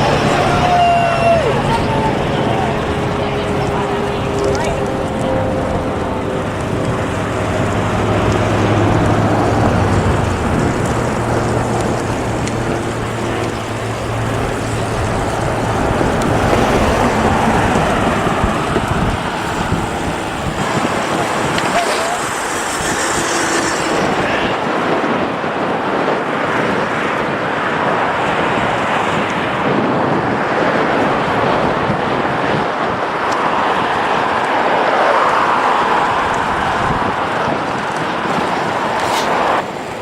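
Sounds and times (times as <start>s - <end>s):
low engine hum: 0.0s - 26.0s
passing car traffic: 0.0s - 40.0s
wind on microphone: 0.0s - 40.0s.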